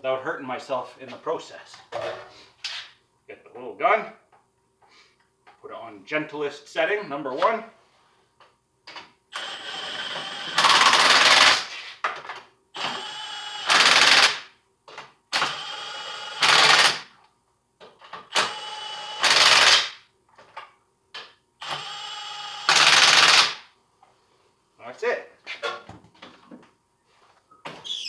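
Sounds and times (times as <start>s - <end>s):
impact wrench spinning nuts: 9.4s - 11.7s, 12.8s - 14.4s, 15.4s - 17.0s, 18.4s - 19.9s, 21.6s - 23.6s.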